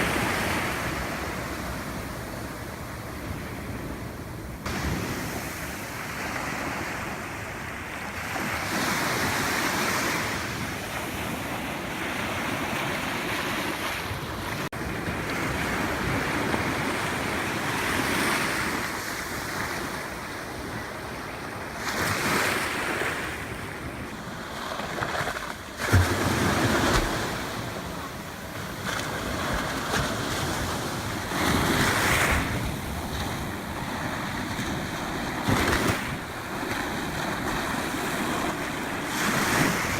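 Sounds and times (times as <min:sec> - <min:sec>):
sea surf washing onto beach: 0:00.0 - 0:19.2, 0:22.6 - 0:39.9
wind buffeting microphone: 0:28.8 - 0:39.9.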